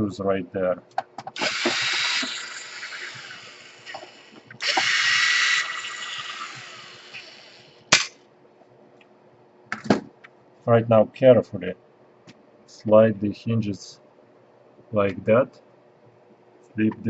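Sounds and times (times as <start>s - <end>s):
electric screwdriver motor: 1.4s - 7.8s
sharp click: 7.9s - 8.2s.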